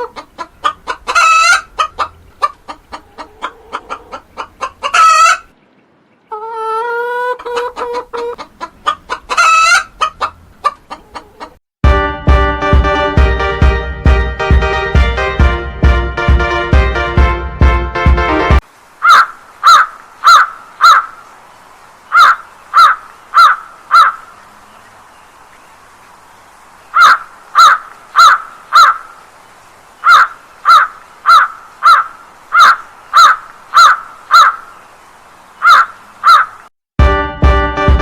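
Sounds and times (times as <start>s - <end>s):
bird calling: 19.0s - 21.3s, 22.0s - 25.9s, 26.8s - 29.2s, 29.9s - 36.7s.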